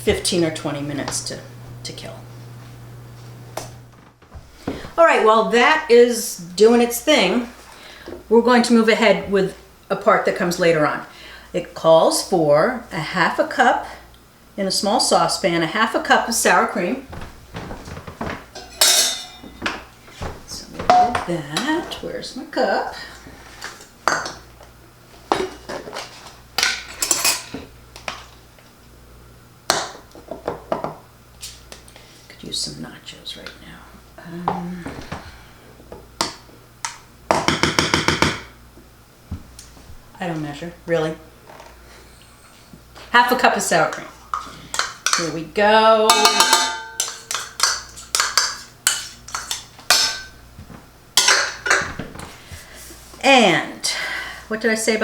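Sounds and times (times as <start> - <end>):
dishes and utensils clattering: 17.1 - 22.0, 25.3 - 27.7, 46.1 - 50.4, 51.2 - 52.4
spoon clinking on kitchenware: 46.1 - 50.3.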